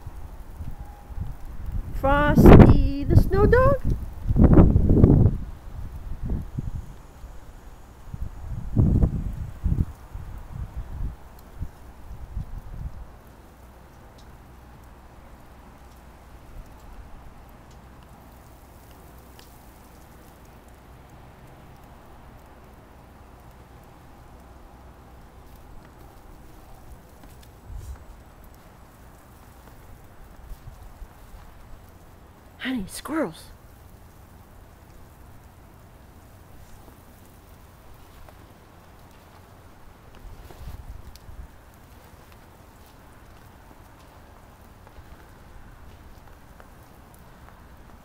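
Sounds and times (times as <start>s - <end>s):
blizzard wind on microphone: 0.0s - 13.2s
blizzard wind: 0.0s - 48.0s
faint ticks: 3.8s - 4.5s, 9.2s - 32.6s, 33.5s - 48.0s.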